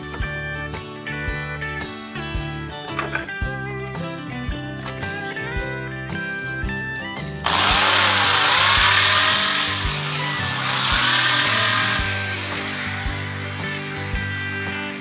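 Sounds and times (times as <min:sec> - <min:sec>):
background music with steady beat: 0:00.0 - 0:15.0
handheld power tool running: 0:07.4 - 0:15.0.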